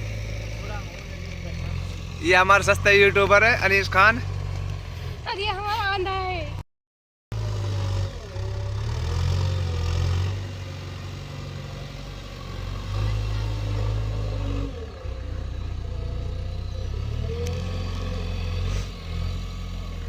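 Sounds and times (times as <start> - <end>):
heavy diesel engine running: 0.0 - 6.6, 7.3 - 20.0.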